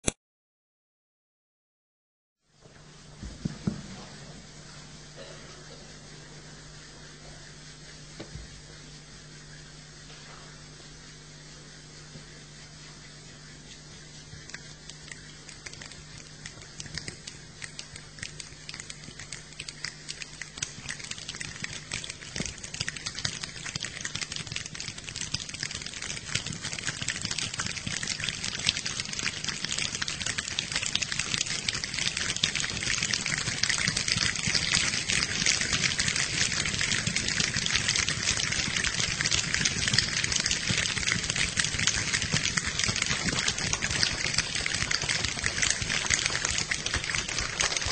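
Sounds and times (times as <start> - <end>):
rain falling: 14.4 - 47.9.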